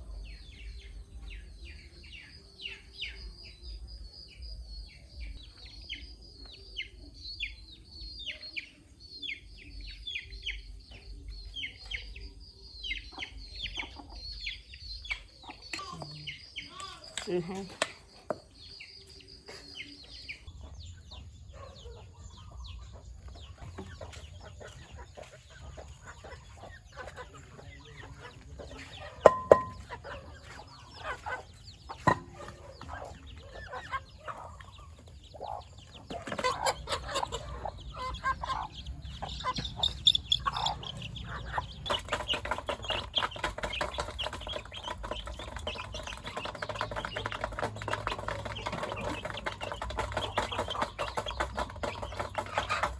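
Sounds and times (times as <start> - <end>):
chickens clucking: 4.8 - 52.9
sharp knocks: 29.2 - 29.9.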